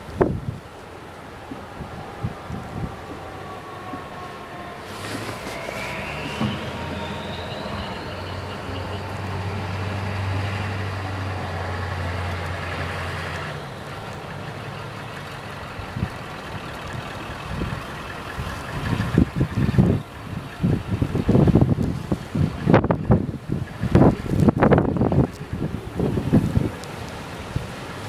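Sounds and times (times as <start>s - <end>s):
wind buffeting microphone: 0.0s - 13.1s, 13.8s - 28.0s
heavy vehicle engine droning: 0.0s - 28.0s
faint high whine: 4.7s - 10.8s.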